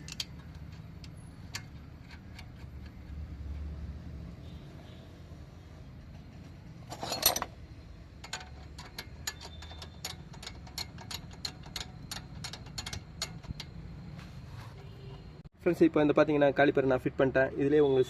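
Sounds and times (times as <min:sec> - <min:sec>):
metallic clatter: 0:00.0 - 0:03.2, 0:06.0 - 0:13.9
ratchet wrench clicking: 0:00.0 - 0:03.2, 0:08.2 - 0:13.8.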